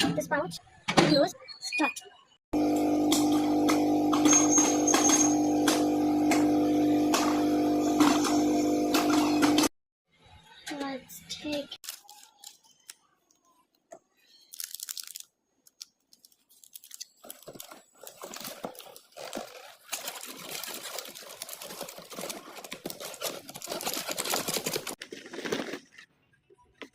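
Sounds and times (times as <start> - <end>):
paper bag crinkling and tearing: 11.8 - 13.0, 14.4 - 26.1
popcorn crackling: 11.8 - 26.9.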